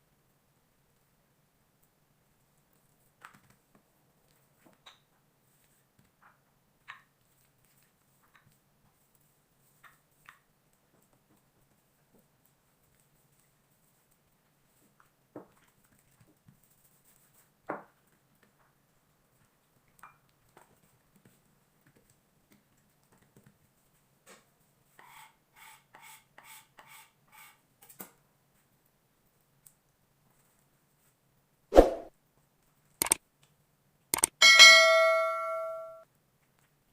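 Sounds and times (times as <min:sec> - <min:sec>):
short strokes on work surface: 0:31.7 - 0:32.1.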